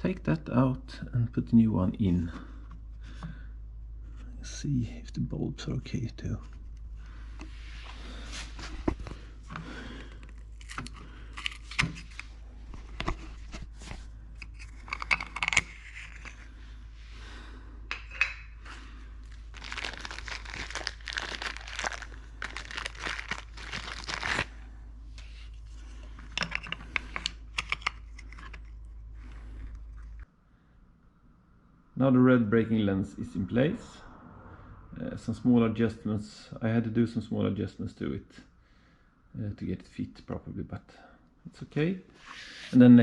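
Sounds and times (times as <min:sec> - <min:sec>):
steady low hum: 0:00.0 - 0:43.0
crinkling and tearing: 0:10.0 - 0:16.5, 0:19.2 - 0:24.6, 0:25.2 - 0:30.2
clicks and knocks of small parts: 0:14.4 - 0:16.4, 0:26.2 - 0:28.8.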